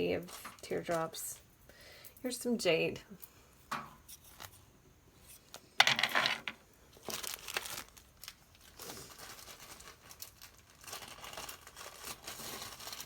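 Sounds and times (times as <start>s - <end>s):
plastic bag crinkling: 6.9s - 13.0s.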